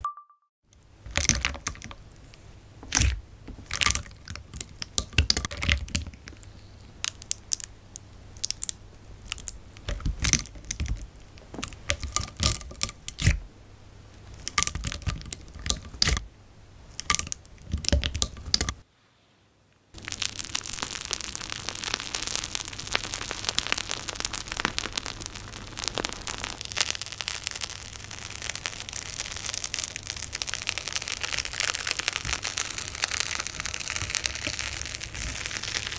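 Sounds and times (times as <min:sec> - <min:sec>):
dense continuous crackling: 0:00.8 - 0:18.8, 0:19.9 - 0:35.9
slime squeezed by hand: 0:02.8 - 0:04.3, 0:20.0 - 0:35.9.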